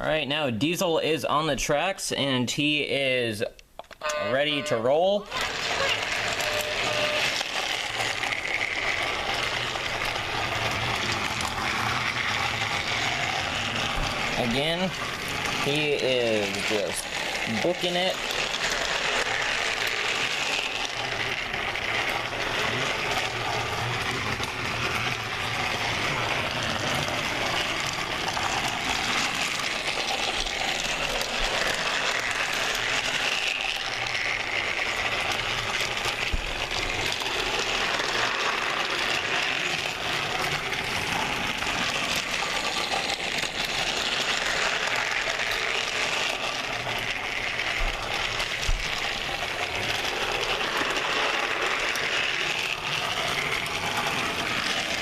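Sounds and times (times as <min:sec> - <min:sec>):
wheels clicking over track joints: 0:03.8 - 0:55.0
toy train motor buzzing: 0:04.0 - 0:55.0.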